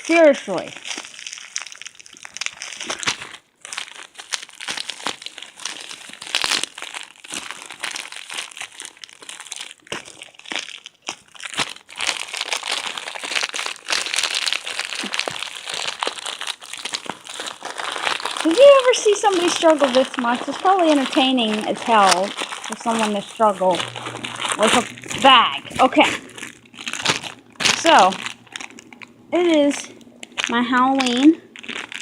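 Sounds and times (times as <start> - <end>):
plastic package crinkling: 0.0 - 32.0.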